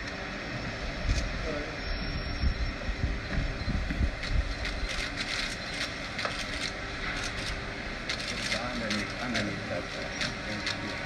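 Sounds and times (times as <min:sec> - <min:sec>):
low background rumble: 0:00.0 - 0:11.0.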